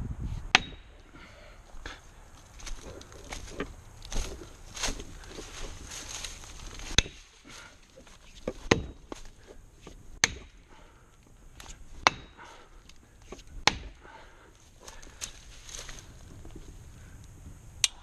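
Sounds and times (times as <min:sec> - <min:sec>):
rustling: 0:01.6 - 0:10.1, 0:12.6 - 0:17.6
sharp knocks: 0:08.5 - 0:09.1, 0:10.2 - 0:10.6.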